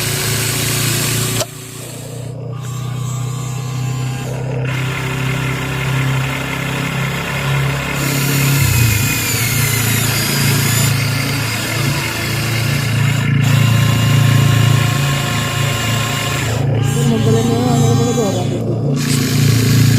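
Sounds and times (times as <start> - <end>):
engine-like idling drone: 0.0 - 19.9
higher whine: 8.0 - 19.9.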